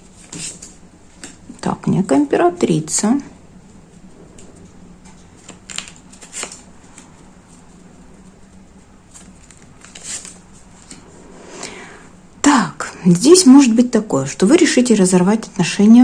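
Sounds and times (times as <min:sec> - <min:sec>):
faint steady hum: 0:00.0 - 0:16.0
cards rustling: 0:05.3 - 0:08.3, 0:09.1 - 0:11.1.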